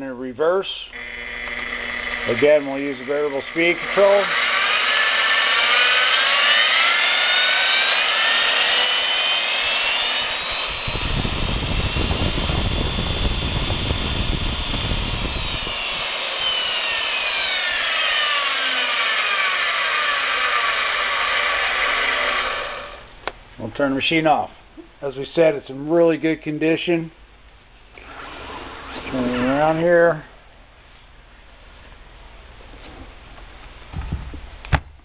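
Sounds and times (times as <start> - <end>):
drill motor whine: 0.9 - 23.1.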